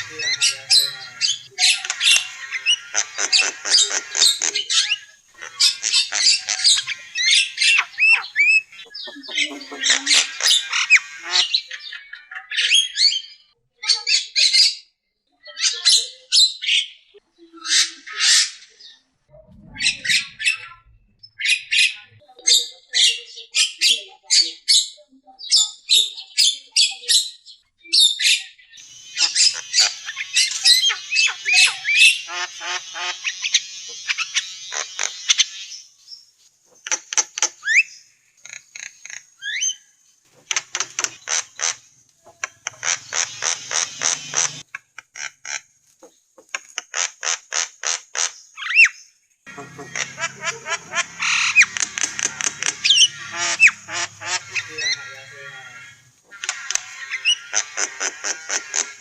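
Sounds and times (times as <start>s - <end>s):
rapid bird chatter: 0.0s - 13.5s, 28.2s - 59.0s
starlings squawking and whistling: 0.0s - 13.5s, 19.5s - 22.2s, 28.0s - 45.6s, 47.0s - 59.0s.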